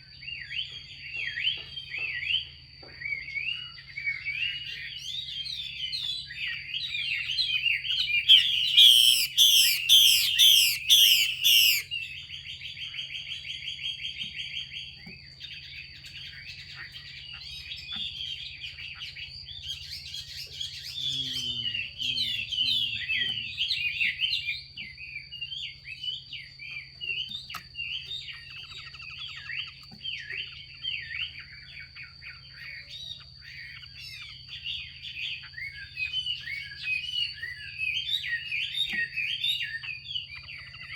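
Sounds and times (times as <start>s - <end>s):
bird calling harshly: 8.0s - 12.0s.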